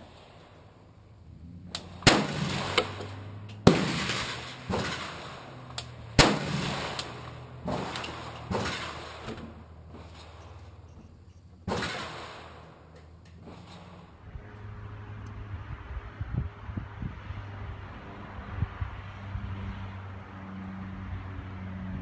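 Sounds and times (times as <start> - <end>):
rifle shots echoing: 1.8 - 9.3, 11.6 - 12.8.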